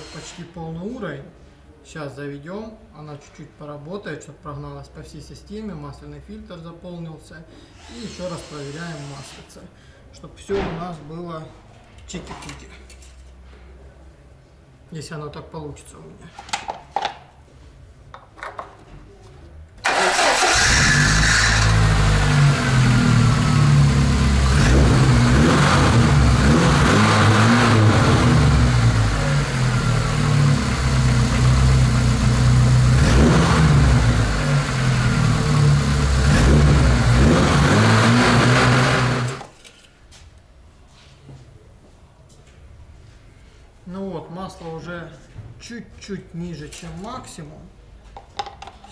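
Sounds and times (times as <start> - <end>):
car engine starting and idling: 19.8 - 39.5.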